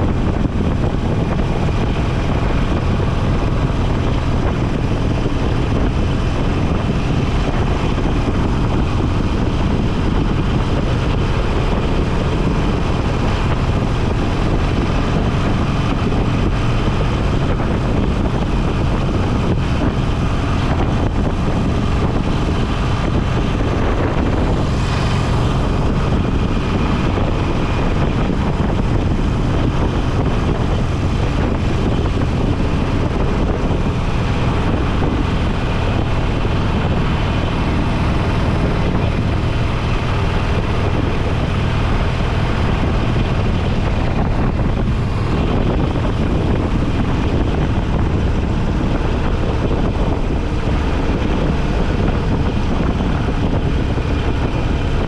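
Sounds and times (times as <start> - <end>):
motorcycle engine cruising: 0.0 - 55.0
wind rushing over microphone: 0.0 - 55.0.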